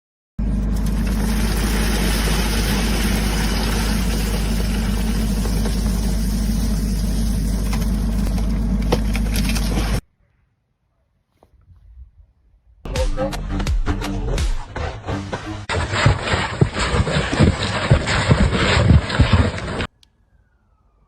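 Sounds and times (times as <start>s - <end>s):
engine-driven machine running: 0.4s - 10.0s, 14.3s - 19.9s.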